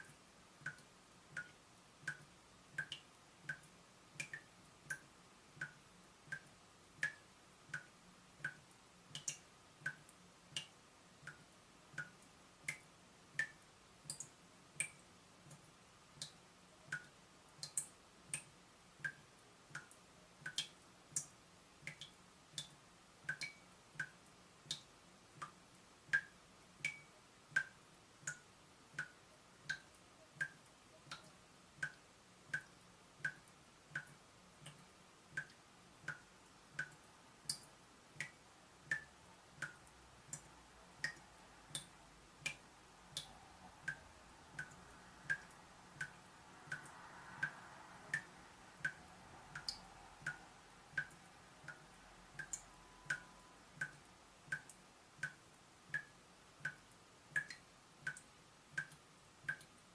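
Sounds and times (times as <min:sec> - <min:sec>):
water drops plinking from tap: 0:21.9 - 0:24.9, 0:26.2 - 0:28.4, 0:52.4 - 0:55.4.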